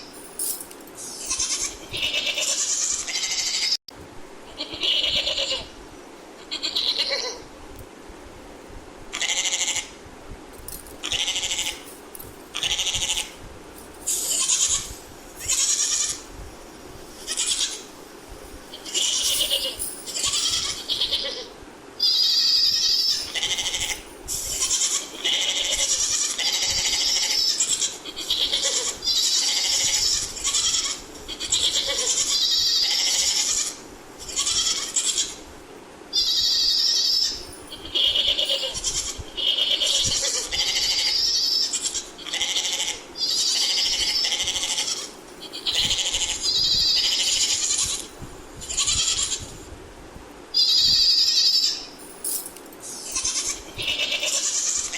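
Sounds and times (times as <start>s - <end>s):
goat bleating: 1.2s - 3.8s, 4.5s - 5.7s, 6.5s - 7.4s, 12.6s - 13.3s, 17.2s - 17.8s, 18.8s - 35.4s, 36.2s - 49.4s, 50.6s - 51.9s, 52.8s - 54.9s.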